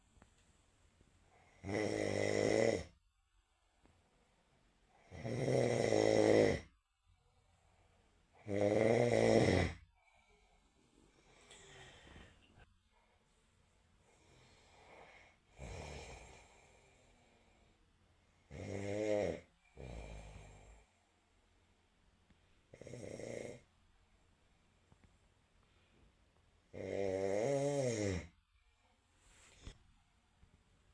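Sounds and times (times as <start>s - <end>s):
person snoring: 1.4s - 3.0s, 4.9s - 6.7s, 8.3s - 9.9s, 14.1s - 17.6s, 18.4s - 20.9s, 22.7s - 23.7s, 26.7s - 28.4s.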